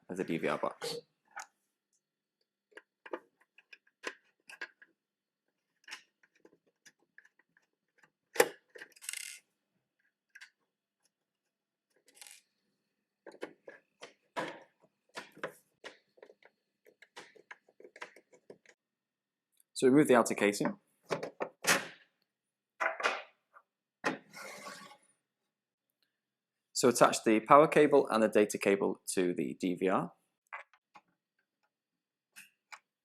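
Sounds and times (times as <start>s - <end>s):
short metal scrape: 24.3s - 25.0s.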